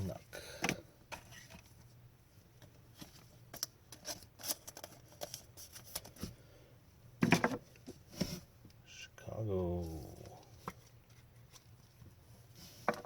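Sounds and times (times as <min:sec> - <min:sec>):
card rustle: 0:02.9 - 0:06.2.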